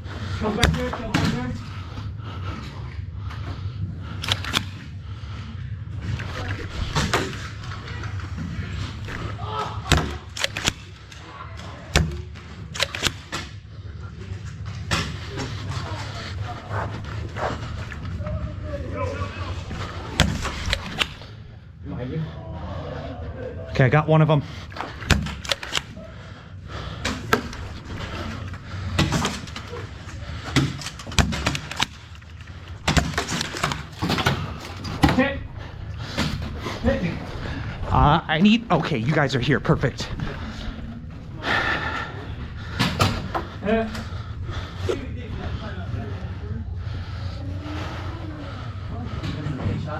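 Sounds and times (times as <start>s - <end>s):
faint voices: 13.6s - 23.9s, 34.4s - 49.9s.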